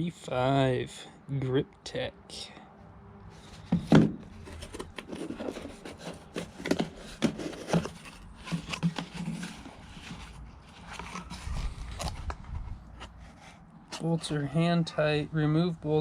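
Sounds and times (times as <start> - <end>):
packaging handled clicks and scrapes: 3.4 - 14.4.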